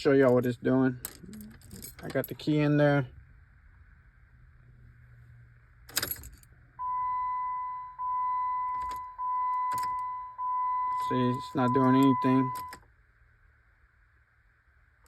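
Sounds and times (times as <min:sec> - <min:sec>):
keys jangling: 0:01.0 - 0:02.4, 0:05.9 - 0:06.4
dashboard warning chime: 0:06.8 - 0:12.8.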